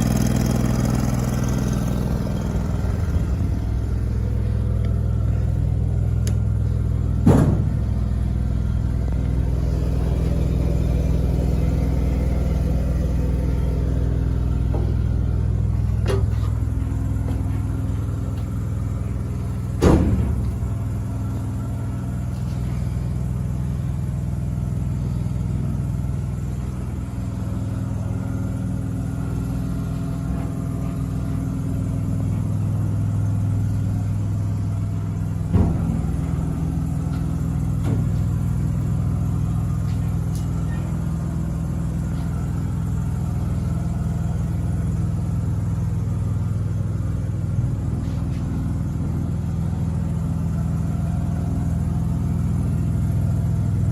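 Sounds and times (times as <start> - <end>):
engine idling: 0.0 - 53.9
sharp knocks: 7.2 - 7.8.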